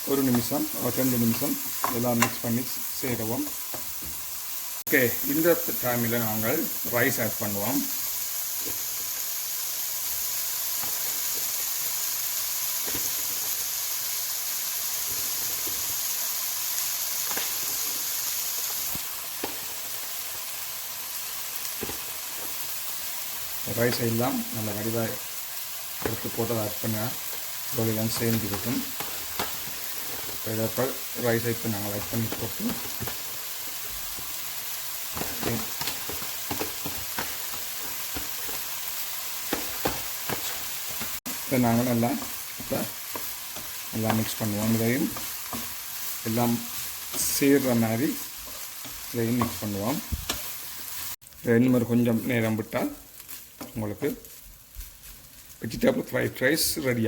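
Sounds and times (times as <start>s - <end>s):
vegetables sizzling in a pan: 0.0s - 57.0s
spatula knocking and scraping pan: 27.2s - 47.7s.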